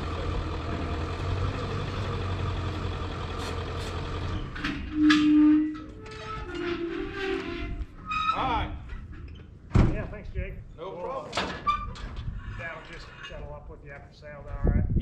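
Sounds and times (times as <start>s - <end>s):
vehicle engine idling: 0.0s - 4.6s.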